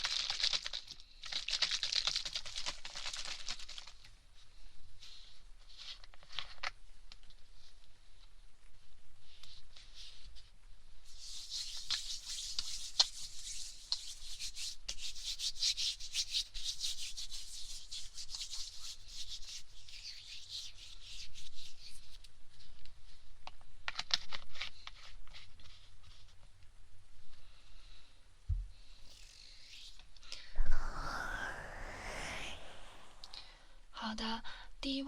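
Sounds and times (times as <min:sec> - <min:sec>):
hands rubbing with hand wash: 0:11.2 - 0:21.3.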